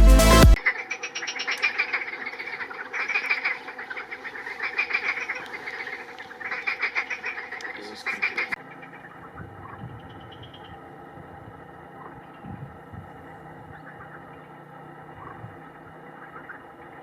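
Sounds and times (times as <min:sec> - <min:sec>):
music: 0:00.0 - 0:00.6
frogs croaking: 0:00.6 - 0:17.0.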